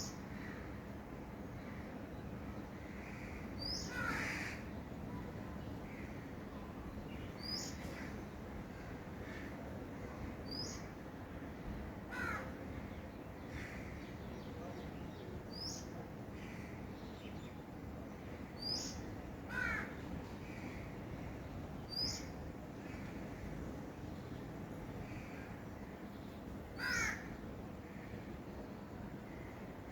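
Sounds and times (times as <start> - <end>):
steady background hiss: 0.0 - 29.9.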